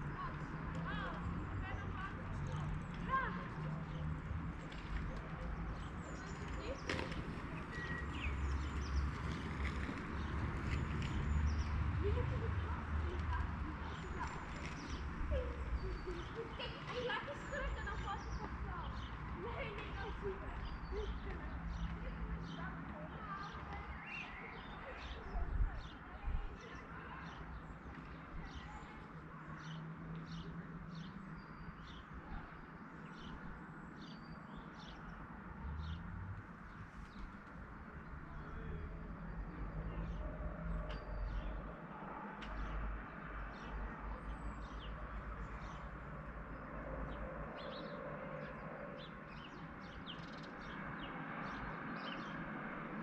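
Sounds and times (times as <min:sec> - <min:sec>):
small birds chirping: 0:00.0 - 0:41.8, 0:42.4 - 0:53.0.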